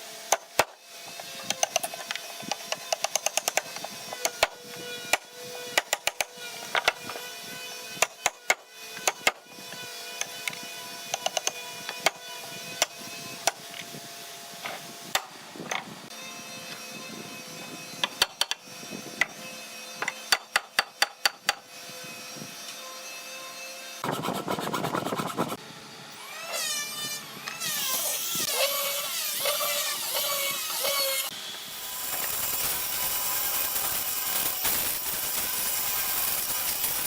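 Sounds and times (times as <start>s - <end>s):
rasping saw with squeaks: 0.9s - 13.7s, 16.1s - 25.6s, 26.2s - 35.0s
hissing tool noise: 24.0s - 37.0s.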